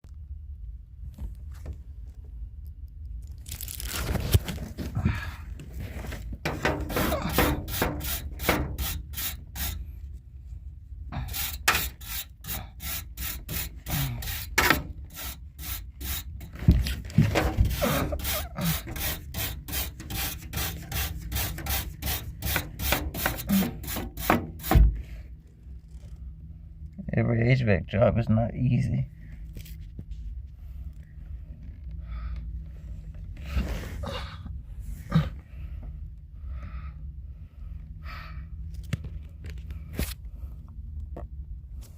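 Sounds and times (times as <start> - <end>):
rasping scraping strokes: 6.4 - 9.9, 11.2 - 24.8.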